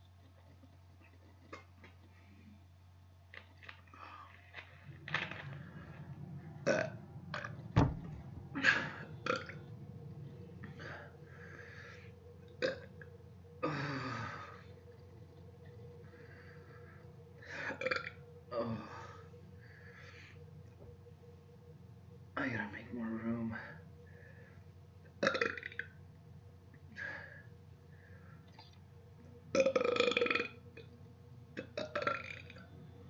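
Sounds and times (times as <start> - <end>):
woman burping: 25.2 - 25.7.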